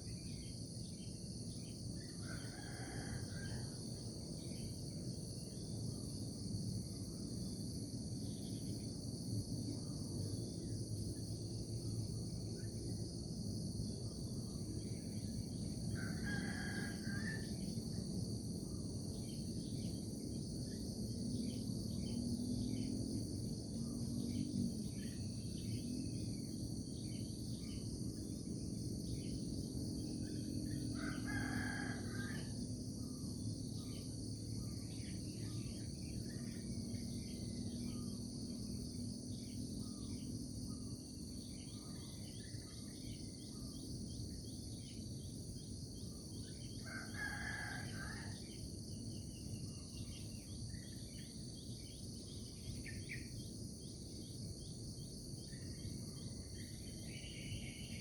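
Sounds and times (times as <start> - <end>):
insects chorus: 0.0 - 58.0
rooster crowing: 2.2 - 3.8, 15.9 - 17.5, 30.9 - 32.6, 46.8 - 48.4.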